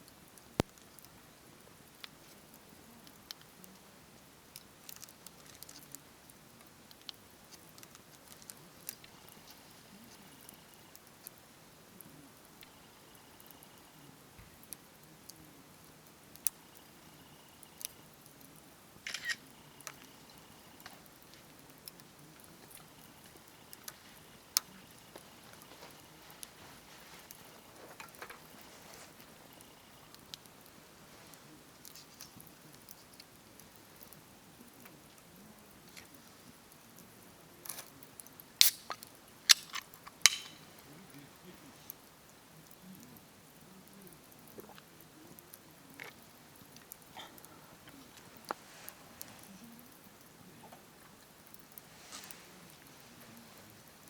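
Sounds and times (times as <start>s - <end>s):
campfire crackling and popping: 0.0s - 54.0s
faint steady hiss: 0.0s - 54.0s.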